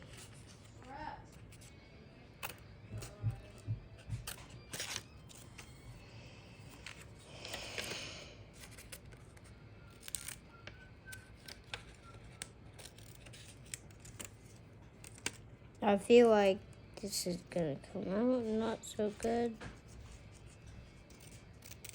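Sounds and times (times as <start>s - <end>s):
scissors cutting paper: 2.4s - 5.8s, 6.6s - 15.5s, 18.6s - 21.9s.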